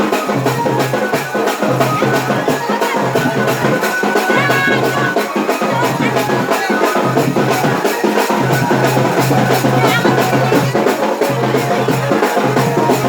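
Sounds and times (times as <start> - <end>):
dance music with drum beat: 0.0 - 13.0.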